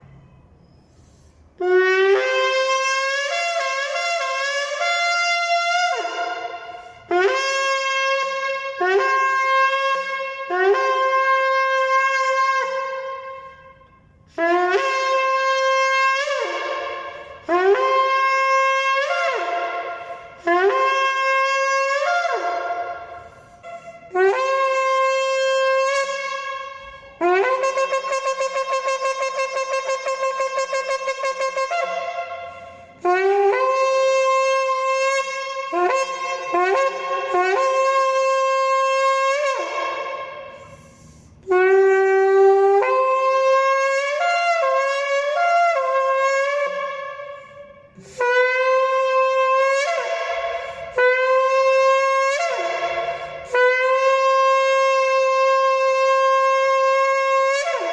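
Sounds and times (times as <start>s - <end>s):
shofar blasts: 0.0s - 57.9s
breaths: 0.4s - 1.6s, 6.6s - 7.1s, 16.9s - 17.5s, 19.8s - 20.4s, 23.0s - 24.2s, 32.3s - 33.0s, 40.3s - 41.5s, 47.2s - 48.3s, 50.4s - 51.0s, 52.8s - 53.5s.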